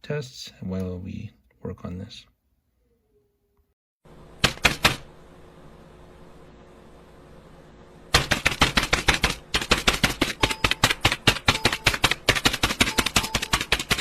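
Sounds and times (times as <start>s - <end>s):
computer hum: 3.3s - 14.0s
fast keyboard typing: 4.4s - 5.1s, 8.2s - 14.0s.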